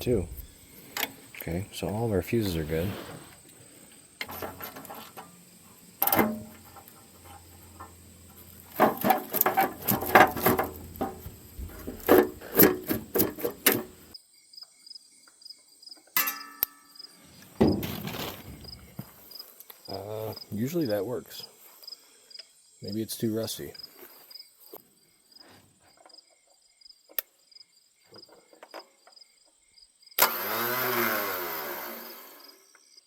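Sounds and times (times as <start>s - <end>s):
crickets chirping: 0.0s - 30.3s, 32.0s - 33.0s
tool knocks and clanks: 4.2s - 5.3s, 6.0s - 14.0s, 17.6s - 18.8s.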